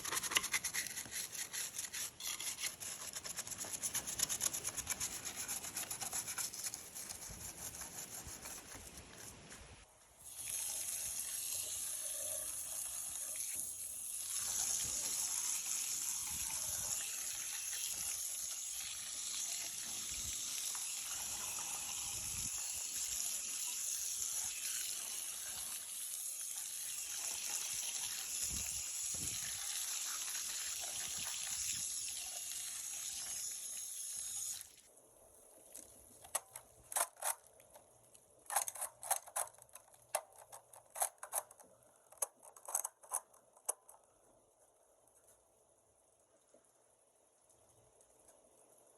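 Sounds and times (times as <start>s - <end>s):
water running from tap: 10.3s - 34.8s.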